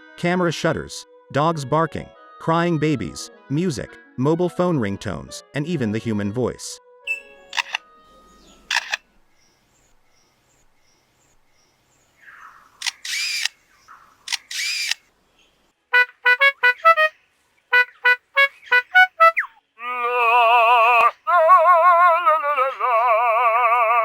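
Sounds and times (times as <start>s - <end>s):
lyrebird shutter-like rasps: 7.5s - 7.8s, 8.7s - 9.0s, 12.8s - 13.6s, 14.2s - 15.1s
lyrebird warbling alarm-like call: 17.7s - 19.7s.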